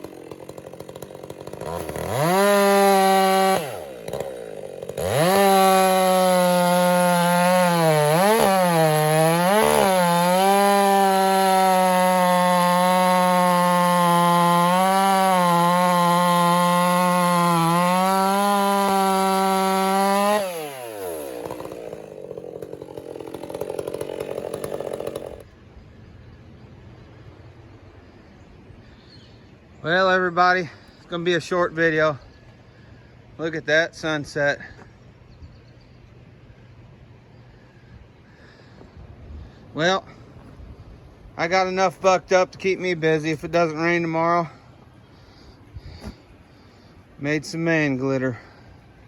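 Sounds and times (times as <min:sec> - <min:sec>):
chainsaw cutting log: 0:00.0 - 0:25.5, 0:41.4 - 0:49.0.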